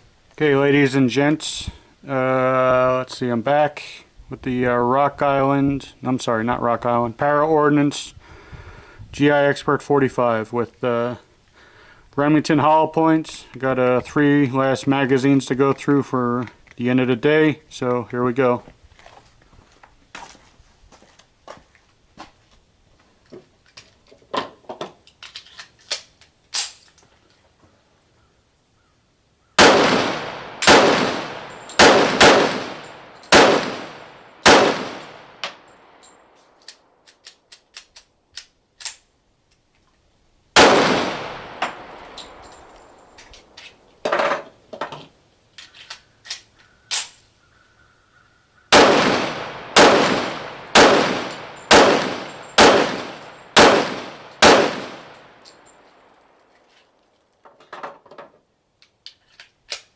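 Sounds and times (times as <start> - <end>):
pistol shots echoing: 29.6 - 35.6, 40.6 - 42.1, 48.7 - 55.4
metal clinks and clicks: 31.4 - 31.8, 42.0 - 44.4.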